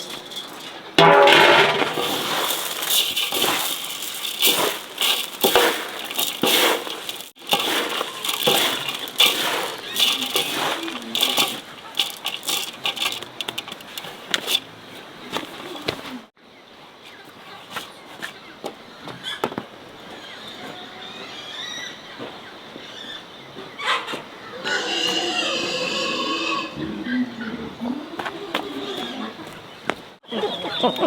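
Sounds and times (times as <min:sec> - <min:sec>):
crackling and rustling: 0:00.0 - 0:16.3
small clicks and knocks: 0:02.7 - 0:14.6.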